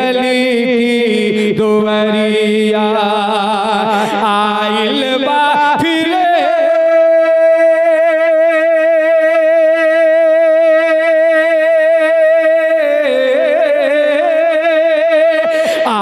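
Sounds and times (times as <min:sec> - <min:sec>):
devotional singing with vibrato: 0:00.0 - 0:16.0.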